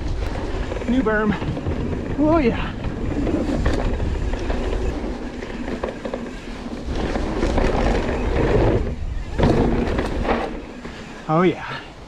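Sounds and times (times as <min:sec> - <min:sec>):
wind noise: 0:00.0 - 0:11.2
bike clattering over bumps: 0:00.0 - 0:11.4
bike tyres rumbling on dirt: 0:00.0 - 0:11.8.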